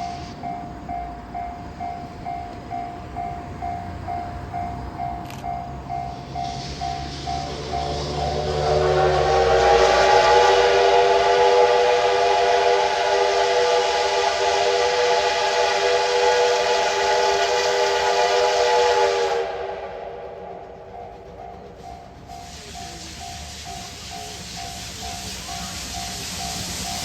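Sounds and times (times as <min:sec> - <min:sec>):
level crossing warning bell: 0:00.0 - 0:09.2, 0:20.5 - 0:27.0
steam whistle blast: 0:06.2 - 0:20.7.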